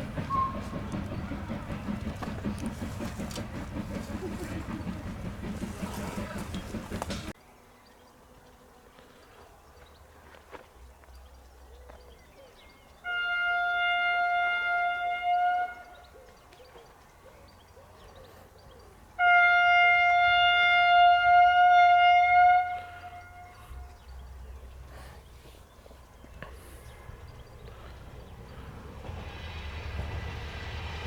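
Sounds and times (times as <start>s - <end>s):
steam locomotive whistle blasts: 0.0s - 1.7s, 13.0s - 16.0s, 19.2s - 23.8s.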